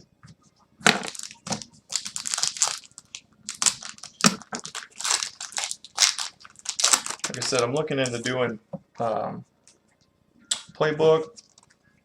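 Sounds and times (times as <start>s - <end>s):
card pack wrapper crinkling: 0.9s - 8.2s.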